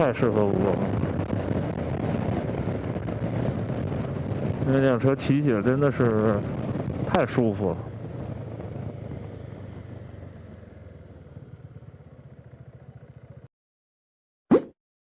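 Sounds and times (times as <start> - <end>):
scooter engine running: 5.6 - 13.5.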